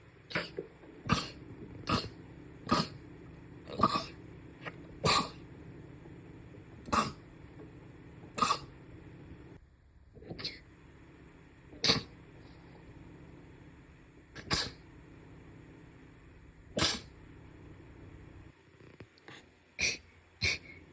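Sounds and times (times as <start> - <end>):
short sharp sneezes: 14.4 - 14.8, 16.8 - 17.1.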